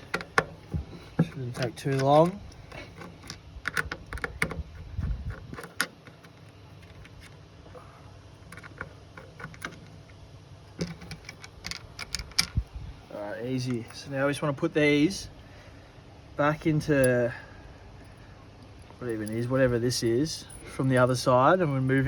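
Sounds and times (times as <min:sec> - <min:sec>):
hand tools clicking and tapping: 0:00.0 - 0:04.7.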